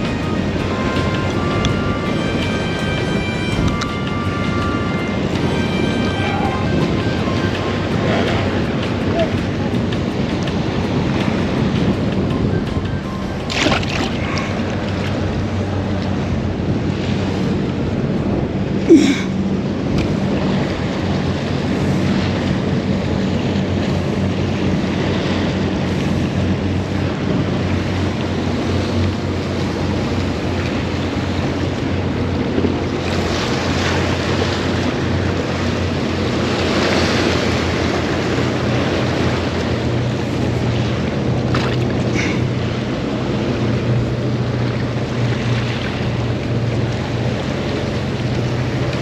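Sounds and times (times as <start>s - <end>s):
low motor hum: 0.0s - 15.2s
surf: 0.0s - 15.2s
wind buffeting microphone: 0.0s - 16.6s.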